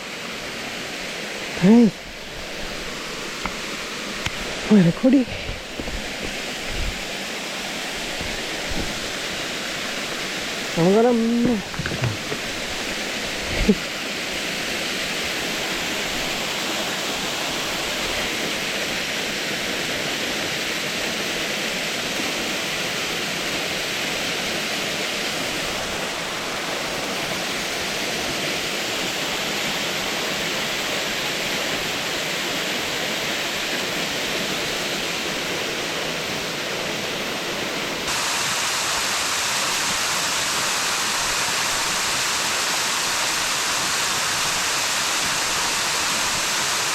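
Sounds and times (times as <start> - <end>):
waterfall pouring: 2.1 - 18.7.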